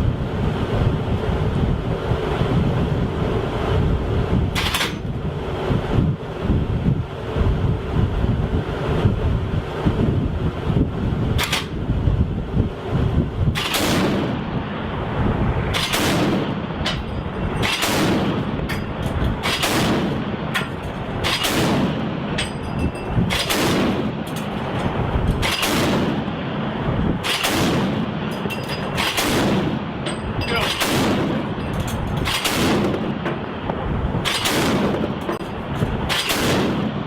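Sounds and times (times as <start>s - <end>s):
rumbling echo: 11.9s - 37.0s
heavy gun shots: 13.6s - 14.5s, 15.7s - 22.5s, 23.2s - 24.6s, 25.4s - 26.5s, 27.1s - 33.5s, 34.2s - 37.0s.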